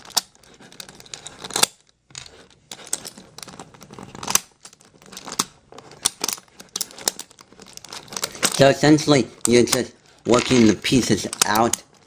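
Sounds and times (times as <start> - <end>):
plastic puzzle cube clicking: 9.3 - 12.0.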